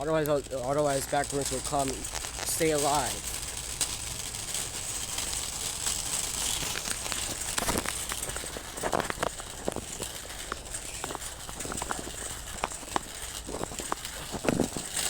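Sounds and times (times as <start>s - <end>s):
ventilation hiss: 0.0s - 15.0s.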